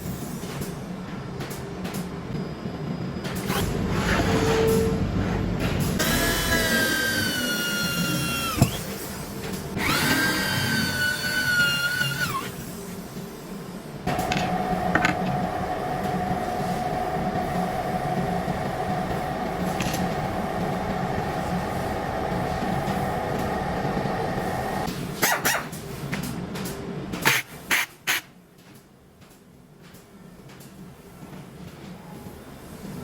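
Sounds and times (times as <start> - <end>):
power tool motor whining: 9.8 - 12.4
lower-pitched motor running: 14.1 - 24.9.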